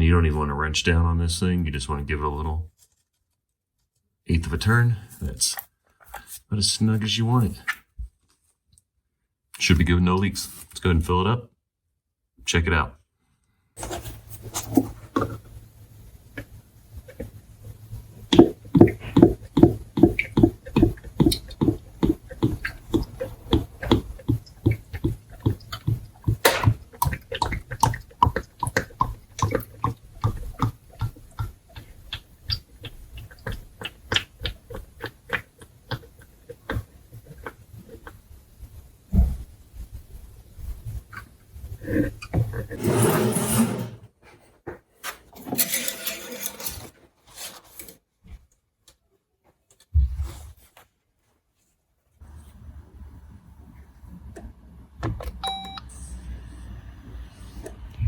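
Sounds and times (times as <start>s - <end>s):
oil glugging from a bottle: 18.3s - 37.6s.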